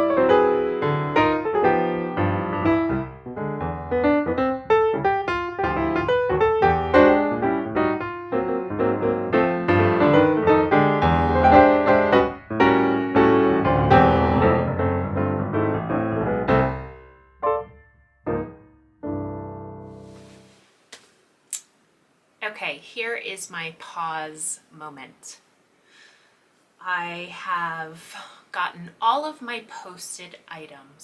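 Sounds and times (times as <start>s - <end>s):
piano music: 0.0s - 20.6s.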